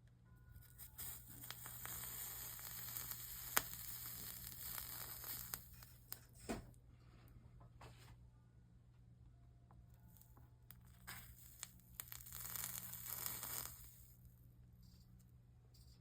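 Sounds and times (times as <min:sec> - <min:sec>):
flux sizzling under soldering iron: 0:00.7 - 0:06.2, 0:10.1 - 0:14.3.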